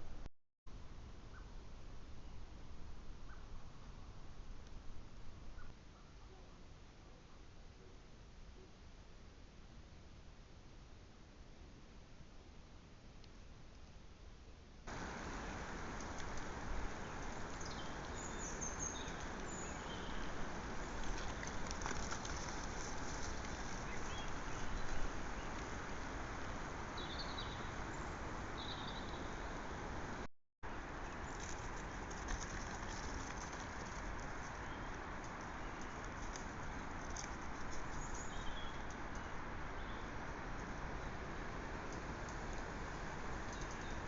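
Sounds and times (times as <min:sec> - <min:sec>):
steady outdoor hiss: 0:00.0 - 0:44.0
faint bird chirps: 0:05.5 - 0:07.9.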